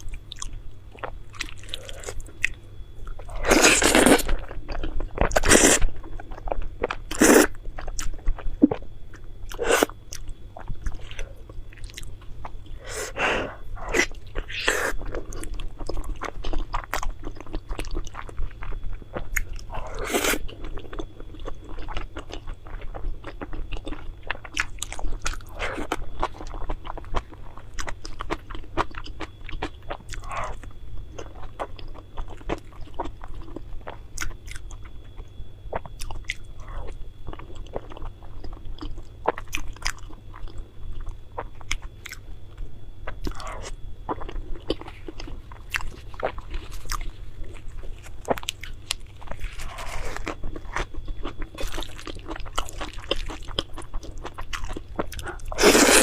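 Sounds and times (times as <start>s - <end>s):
person chewing food: 0.0s - 56.0s.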